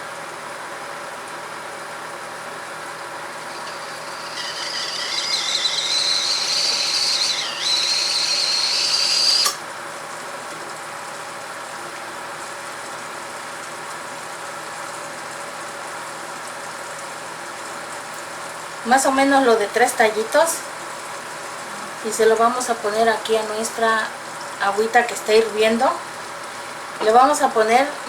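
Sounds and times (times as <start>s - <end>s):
steam whistling: 3.4s - 9.6s.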